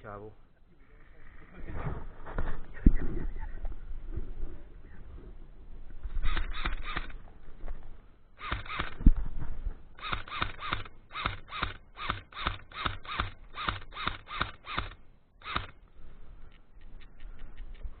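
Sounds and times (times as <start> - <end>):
airsoft gun single shots: 6.2 - 7.2, 8.4 - 9.0, 10.0 - 15.8.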